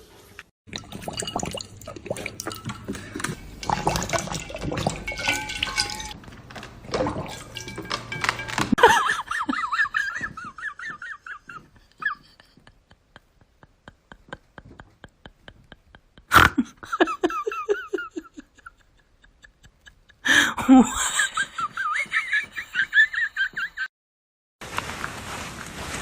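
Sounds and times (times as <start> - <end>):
people laughing: 8.8 - 23.9.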